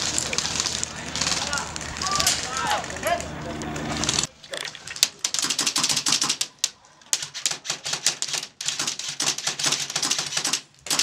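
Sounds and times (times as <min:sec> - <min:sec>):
airsoft guns firing: 0:00.0 - 0:04.3, 0:05.0 - 0:11.0.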